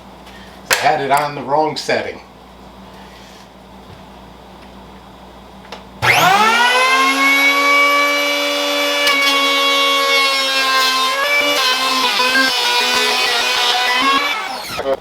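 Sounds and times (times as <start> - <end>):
electric planer motor whine: 6.0 - 15.0.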